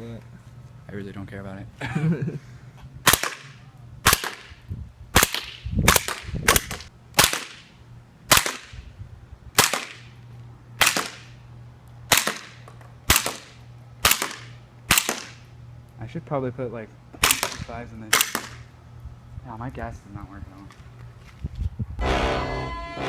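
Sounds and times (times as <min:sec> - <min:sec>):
airsoft gun shots: 0:03.0 - 0:04.6, 0:05.2 - 0:07.7, 0:08.3 - 0:08.8, 0:09.6 - 0:10.1, 0:10.8 - 0:11.4, 0:12.1 - 0:15.4, 0:17.2 - 0:18.6.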